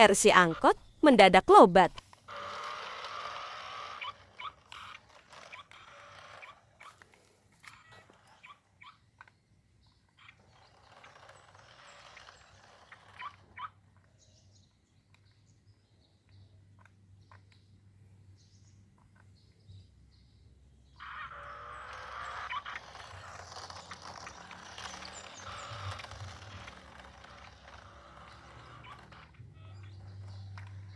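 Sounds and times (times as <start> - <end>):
stuttering whirs and clicks: 0.0 - 7.2, 10.3 - 14.1, 21.0 - 30.9
toy electric motor whirring: 2.2 - 15.3, 21.0 - 30.9.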